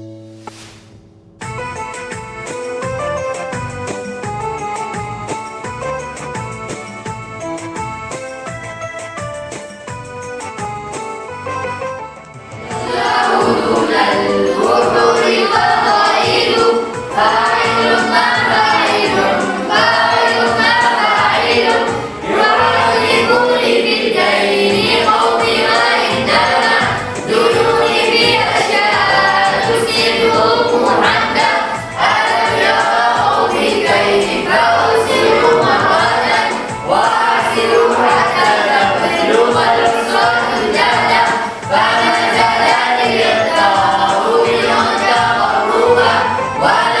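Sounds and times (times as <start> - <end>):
person chanting a poem: 35.1 - 36.0.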